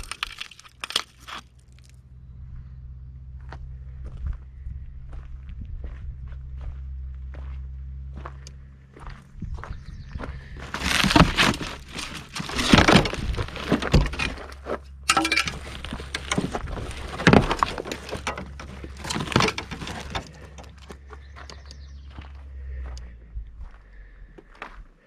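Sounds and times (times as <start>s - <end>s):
wall material crunching and cracking: 0.0s - 2.0s, 10.2s - 22.3s
steady low hum: 2.0s - 24.9s.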